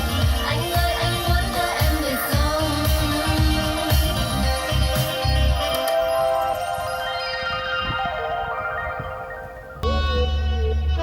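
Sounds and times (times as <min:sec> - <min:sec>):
pop music with heavy bass beat: 0:00.0 - 0:06.3.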